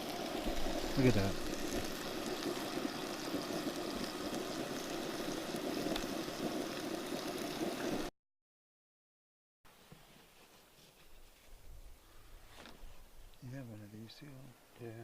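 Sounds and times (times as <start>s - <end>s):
food sizzling on a stove: 0.0s - 8.1s.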